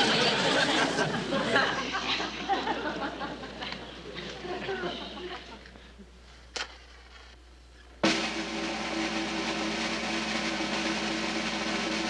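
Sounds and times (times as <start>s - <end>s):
snare drum roll: 8.0s - 12.0s.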